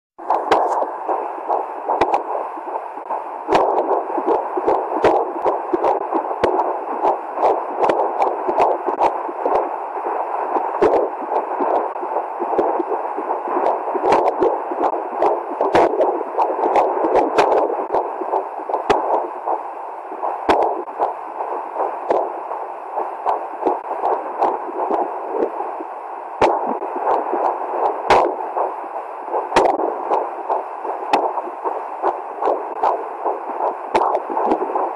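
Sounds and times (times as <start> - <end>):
sharp clicks of fetal hiccups: 0.3 - 2.8, 20.2 - 25.6, 26.4 - 34.9.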